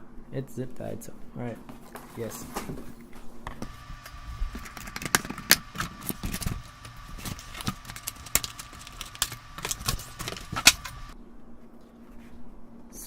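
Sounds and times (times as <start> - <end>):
packaging rustling: 3.6 - 11.2.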